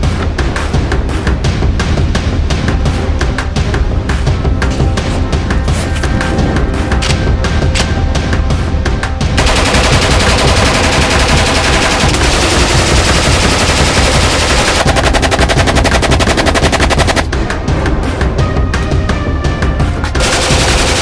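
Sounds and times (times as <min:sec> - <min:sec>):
background music with a beat: 0:00.0 - 0:21.0
rifle firing automatic bursts: 0:09.4 - 0:17.3, 0:20.2 - 0:21.0.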